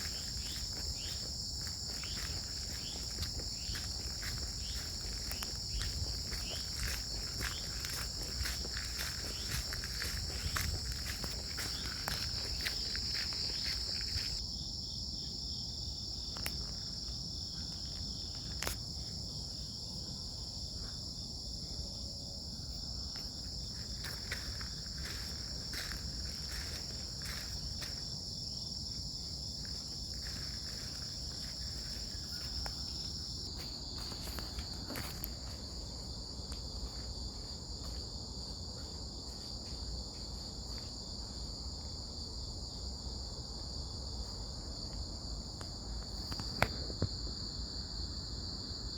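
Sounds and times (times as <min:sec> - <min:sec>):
footsteps on a path: 0:00.0 - 0:14.4, 0:23.1 - 0:38.2
crickets chirping: 0:00.0 - 0:48.9.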